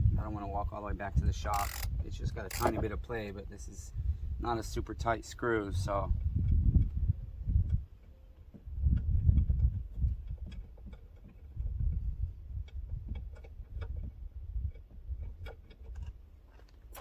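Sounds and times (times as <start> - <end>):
low rumbling handling noise: 0.0 - 17.0
socket ratchet clicking: 1.5 - 2.8.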